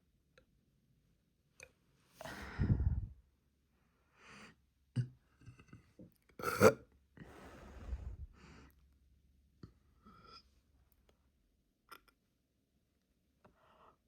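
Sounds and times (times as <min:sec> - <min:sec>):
breathy sounds: 0:02.2 - 0:03.2.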